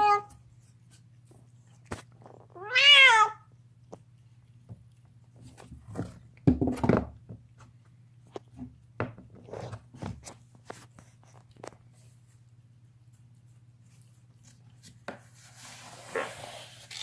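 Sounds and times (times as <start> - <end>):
cat crunching on a bone: 3.5 - 6.4.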